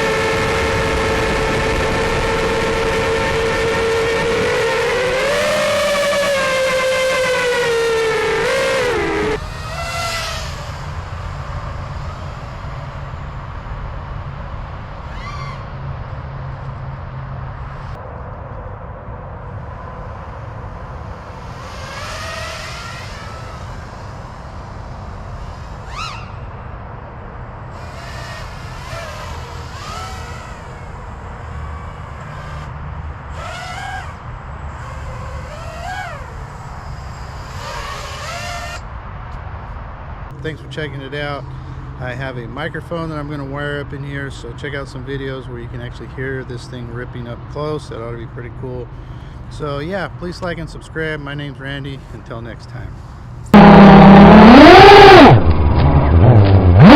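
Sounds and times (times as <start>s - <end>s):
steady low rumble: 0.0s - 15.0s, 15.7s - 21.6s, 38.8s - 54.6s
drone motors whining: 0.0s - 18.4s, 19.2s - 38.9s, 53.4s - 56.9s.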